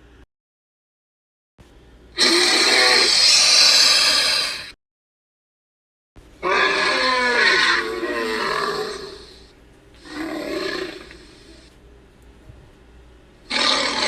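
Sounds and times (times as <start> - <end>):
creature hissing screech: 2.2 - 4.8, 6.4 - 11.7, 13.5 - 14.0
creature wavering roar: 2.2 - 4.8, 6.4 - 11.6, 13.5 - 14.0.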